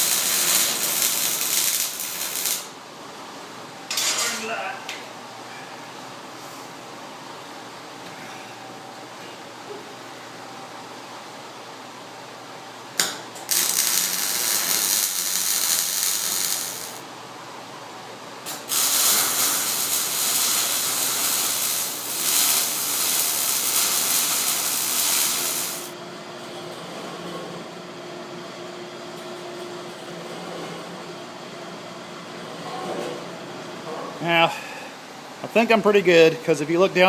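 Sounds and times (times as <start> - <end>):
welder sizzling crackle: 0.0 - 2.7, 13.4 - 17.0, 18.5 - 26.0
welding arc strike click: 13.0 - 17.0, 18.5 - 25.9.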